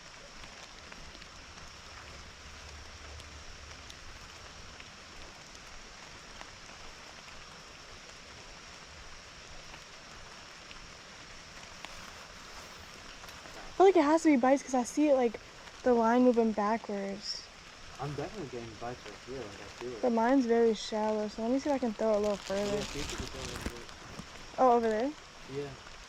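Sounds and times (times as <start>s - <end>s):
creek water running: 0.0s - 26.0s
rain falling: 0.0s - 26.0s
raindrop ticks: 0.0s - 26.0s.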